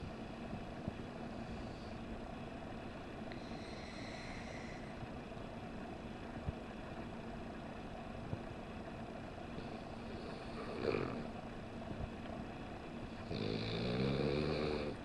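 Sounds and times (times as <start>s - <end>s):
steady background hum: 0.0s - 15.0s
pet breathing in sleep: 1.2s - 2.1s, 3.3s - 5.0s.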